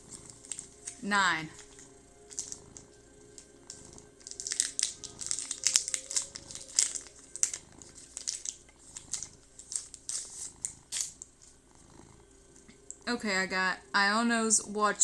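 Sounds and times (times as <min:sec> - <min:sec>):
foil wrapper crinkling: 0:00.3 - 0:01.0, 0:01.6 - 0:11.2.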